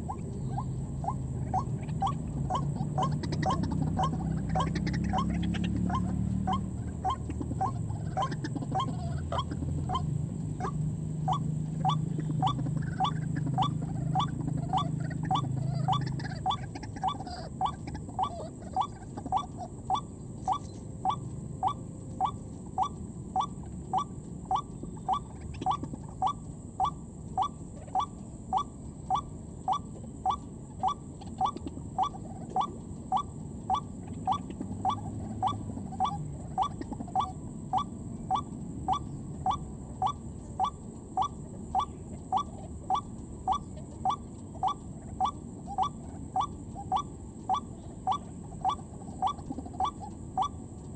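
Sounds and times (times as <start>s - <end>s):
waterhen call: 0.0s - 28.7s.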